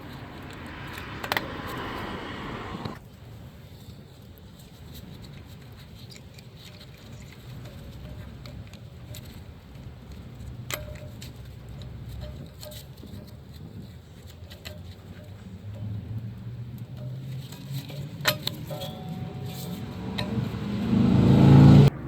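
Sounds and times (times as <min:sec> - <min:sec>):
metallic clicks of tools: 0:05.4 - 0:20.8
sharp ringing metal clink: 0:18.2 - 0:21.0.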